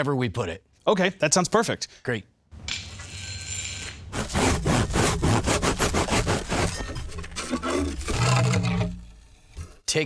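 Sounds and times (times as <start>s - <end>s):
dry ice chattering on metal: 6.6s - 9.9s.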